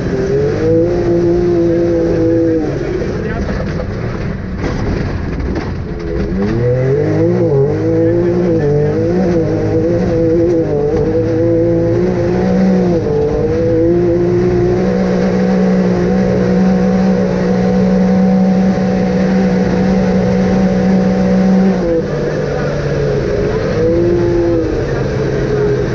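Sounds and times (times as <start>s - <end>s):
vehicle engine running under load: 0.0s - 25.9s.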